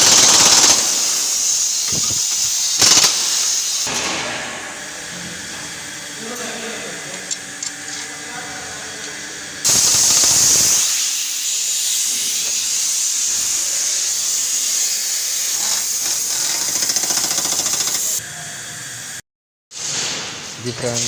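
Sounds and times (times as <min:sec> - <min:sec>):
pneumatic impact wrench hammering: 0:00.0 - 0:05.2, 0:09.6 - 0:18.2.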